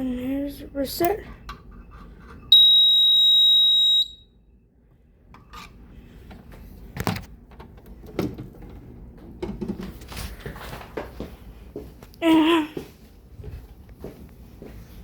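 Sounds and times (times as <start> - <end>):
fire alarm high-pitched electronic tone: 2.5 - 4.4.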